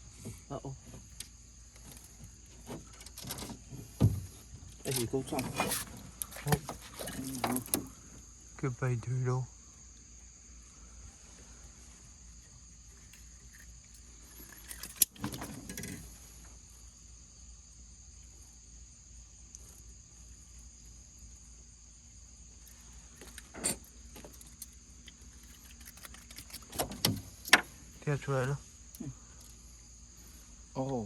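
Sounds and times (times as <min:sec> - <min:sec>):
insects droning: 0:00.0 - 0:31.0
handling noise: 0:01.8 - 0:08.1.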